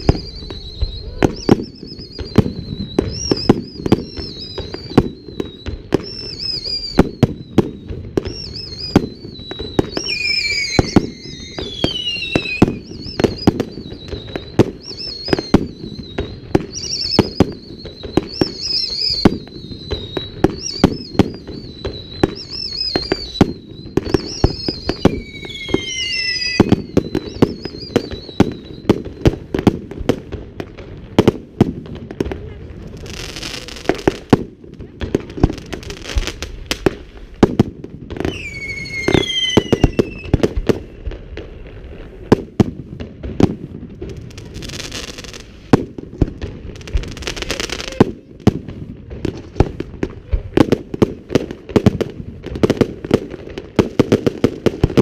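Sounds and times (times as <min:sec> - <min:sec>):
firework whistles: 0:00.0 - 0:30.3, 0:38.2 - 0:42.5, 0:44.2 - 0:48.4
firework bangs: 0:00.0 - 0:55.0.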